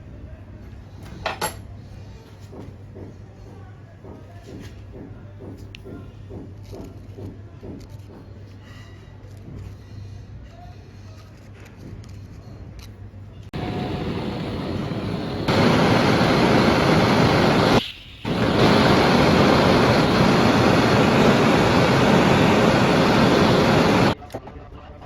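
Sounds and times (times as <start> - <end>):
loud rushing hiss: 13.6 - 24.2.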